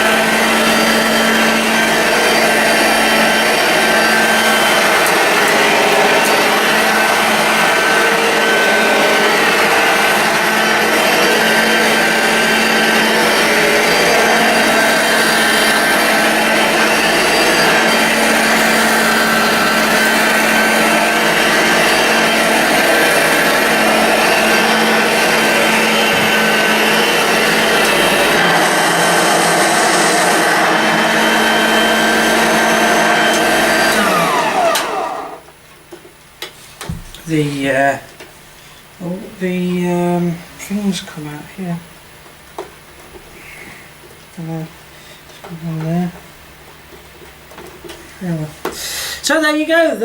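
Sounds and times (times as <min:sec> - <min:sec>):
vacuum cleaner running: 0:00.0 - 0:35.6.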